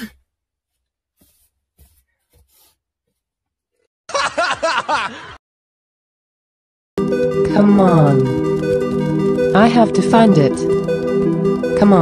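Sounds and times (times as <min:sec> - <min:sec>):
people laughing: 0:04.1 - 0:05.4.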